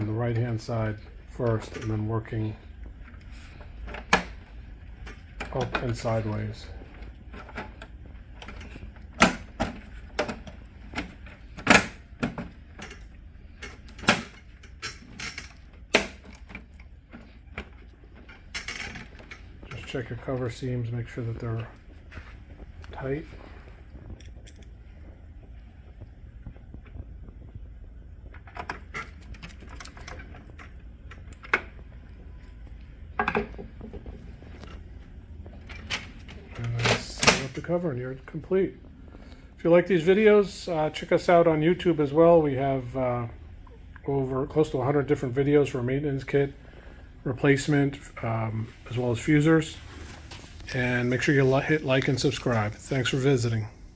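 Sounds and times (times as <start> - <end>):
steady low hum: 0.0 - 53.9
plastic panels clicking and snapping: 13.6 - 17.7.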